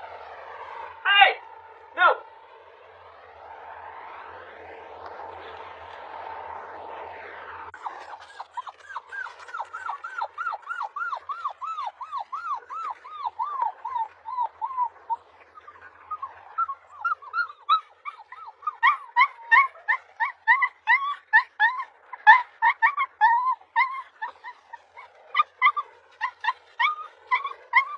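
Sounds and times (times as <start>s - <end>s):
puppy whining: 7.8s - 27.9s
puppy yipping: 7.8s - 27.9s.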